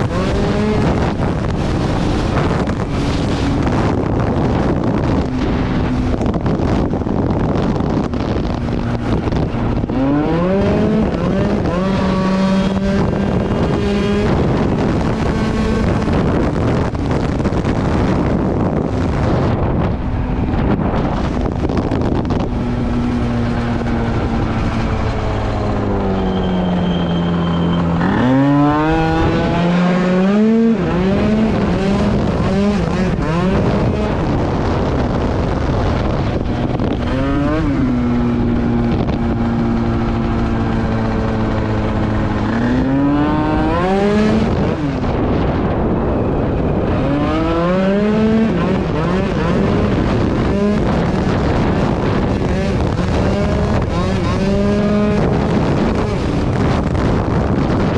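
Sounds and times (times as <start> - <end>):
scooter engine revving: 22.5 - 34.9.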